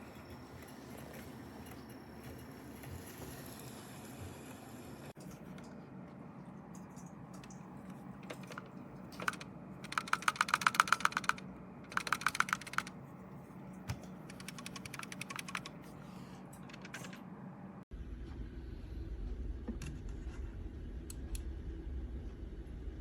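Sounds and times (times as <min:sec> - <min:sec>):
rapid plastic key clicking: 0:09.2 - 0:12.9, 0:14.3 - 0:15.7.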